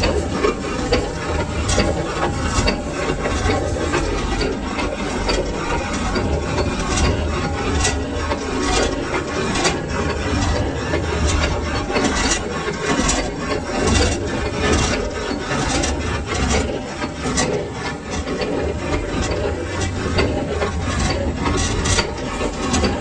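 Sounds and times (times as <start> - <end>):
metal lathe humming: 0.0 - 23.0
tool scraping workpiece: 0.0 - 23.0.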